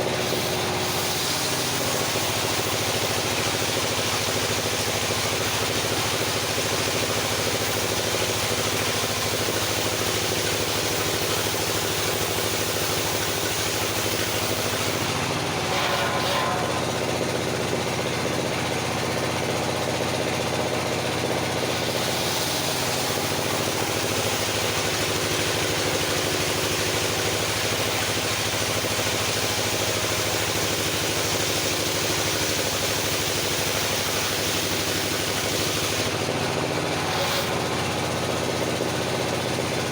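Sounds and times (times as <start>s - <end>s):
rasping saw burst: 0.0s - 5.5s, 8.9s - 19.2s, 33.0s - 39.9s
sawmill engine humming: 0.0s - 39.9s.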